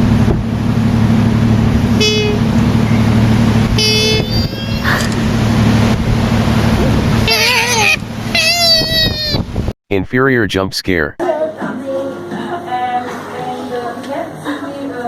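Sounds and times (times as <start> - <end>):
motor vehicle rumble: 0.0 - 9.8
horn tooting: 1.9 - 6.0.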